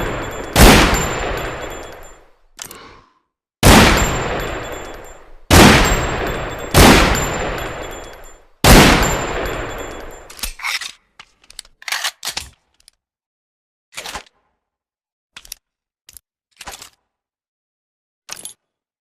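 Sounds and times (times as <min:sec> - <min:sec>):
pistol shots echoing: 0:00.0 - 0:02.2, 0:03.6 - 0:10.3.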